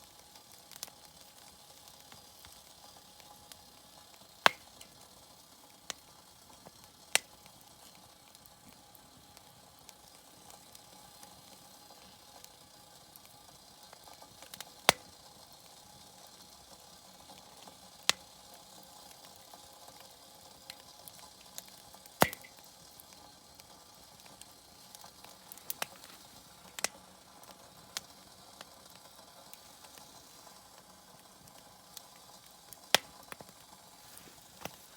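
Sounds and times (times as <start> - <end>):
low steady hiss: 0.0 - 34.9
wood fire crackling: 0.0 - 34.9
sharp loud pops of fire: 4.4 - 4.8, 22.2 - 22.6.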